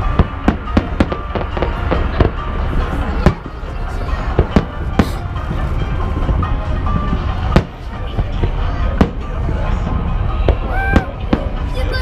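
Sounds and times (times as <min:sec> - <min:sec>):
fireworks exploding: 0:00.0 - 0:12.0.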